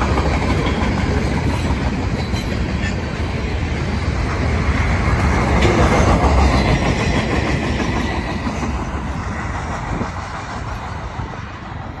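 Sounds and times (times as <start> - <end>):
freight train rolling past: 0.0 - 12.0.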